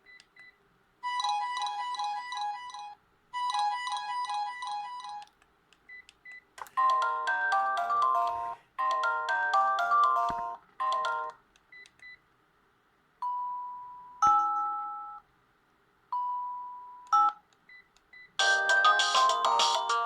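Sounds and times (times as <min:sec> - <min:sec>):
polyphonic ringtone melody: 0:01.0 - 0:05.2, 0:06.8 - 0:11.4, 0:18.4 - 0:20.0.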